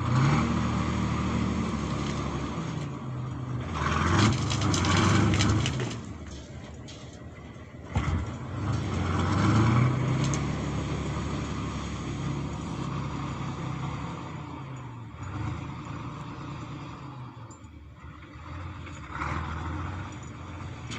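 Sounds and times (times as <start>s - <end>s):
tractor diesel engine under load: 0.0s - 20.9s.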